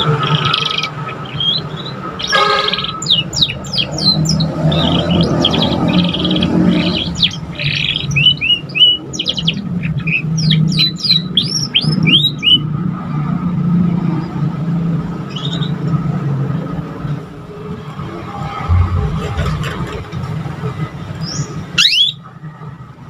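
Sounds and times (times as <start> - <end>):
steady low hum: 17.8 - 21.1.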